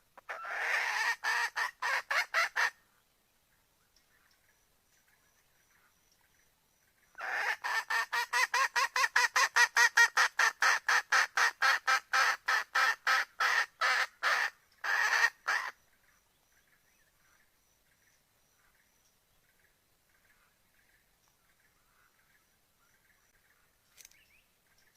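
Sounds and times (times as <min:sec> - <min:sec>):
hen cackling: 0:00.2 - 0:02.8, 0:07.2 - 0:15.8.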